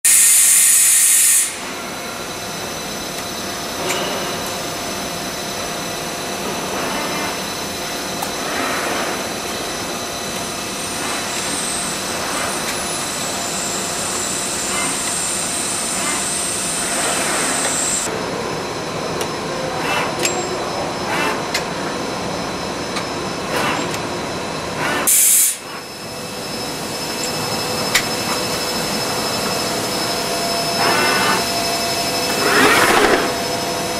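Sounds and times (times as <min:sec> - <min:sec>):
loud bursts of hiss: 0:00.0 - 0:01.8, 0:25.1 - 0:25.7
grinder machine hum: 0:26.4 - 0:33.9.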